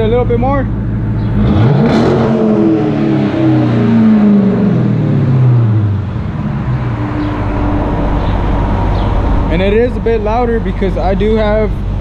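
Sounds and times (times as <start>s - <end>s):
car engine revving and idling: 0.0s - 12.0s.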